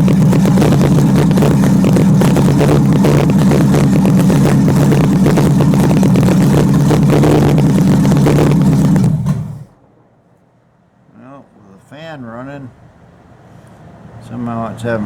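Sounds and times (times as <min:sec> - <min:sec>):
radiator fan running: 0:00.0 - 0:09.8
car engine idling: 0:00.0 - 0:10.3.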